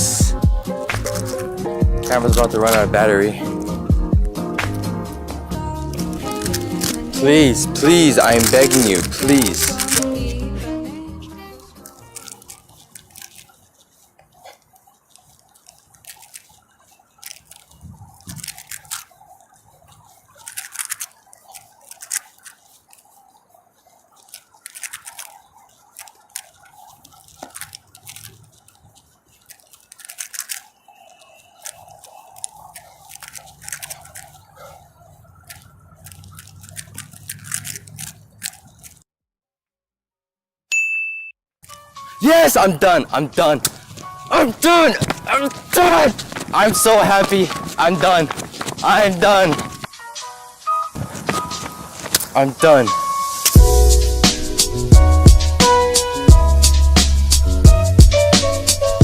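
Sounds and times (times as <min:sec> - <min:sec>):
plastic puzzle cube clicking: 0:05.9 - 0:07.2, 0:08.1 - 0:10.2, 0:11.7 - 0:13.7, 0:15.2 - 0:19.1, 0:20.4 - 0:22.9, 0:24.1 - 0:34.5, 0:35.4 - 0:39.0.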